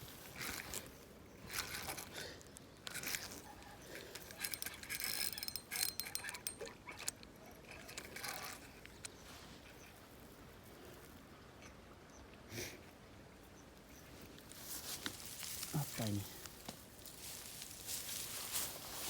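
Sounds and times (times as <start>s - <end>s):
fishing reel cranking: 0.3s - 2.2s, 2.8s - 8.9s.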